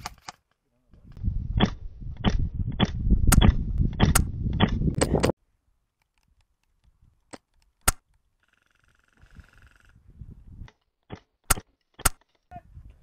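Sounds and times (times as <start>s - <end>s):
wind rumble: 1.0s - 5.4s, 9.2s - 10.7s.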